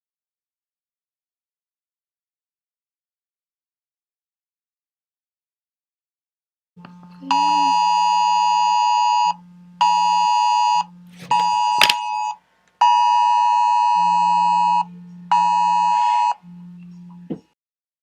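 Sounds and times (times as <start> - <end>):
low hum: 6.8 - 12.3, 13.8 - 17.4
buzzy emergency alert tone: 6.9 - 17.3
sharp click: 11.2 - 12.1.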